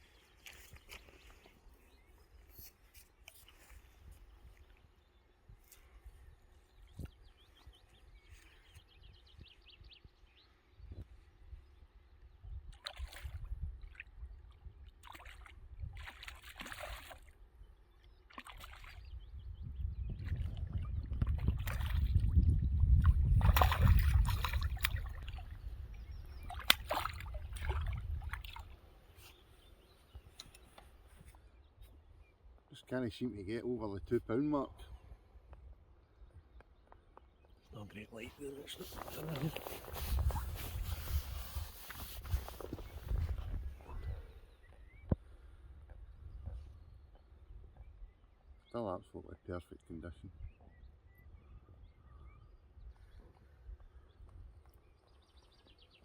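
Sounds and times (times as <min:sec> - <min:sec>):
water sloshing and splashing: 0:14.9 - 0:17.4, 0:18.3 - 0:19.1, 0:20.2 - 0:29.0.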